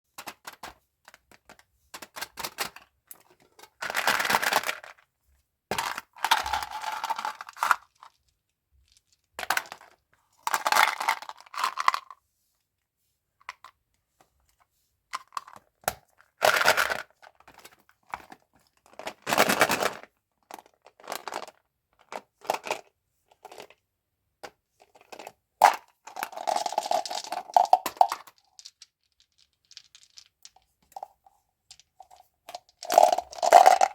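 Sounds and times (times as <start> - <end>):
plastic wrappers crinkling: 26.2 - 30.3.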